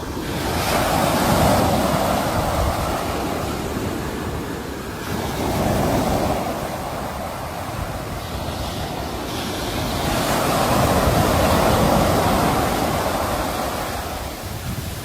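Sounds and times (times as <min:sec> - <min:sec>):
sea waves breaking on shore: 0:00.0 - 0:15.0.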